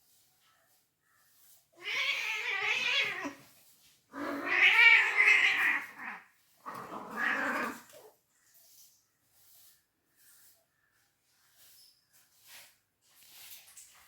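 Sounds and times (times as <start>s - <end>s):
cat yowling: 1.8s - 3.4s, 4.2s - 6.2s, 6.8s - 7.9s.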